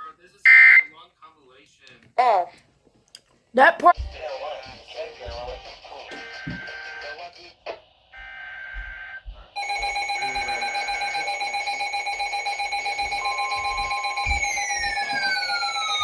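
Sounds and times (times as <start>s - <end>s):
steady alert tone: 9.6s - 16.0s.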